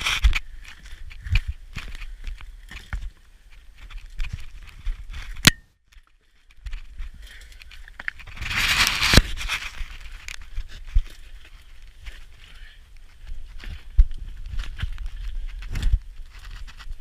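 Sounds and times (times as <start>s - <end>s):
scraping crunching rush: 6.2s - 17.0s.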